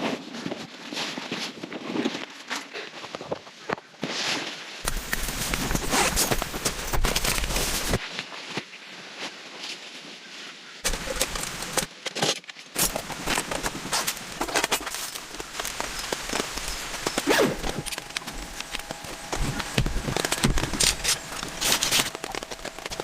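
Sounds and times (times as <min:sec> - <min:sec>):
rain pattering: 0:12.8 - 0:23.0.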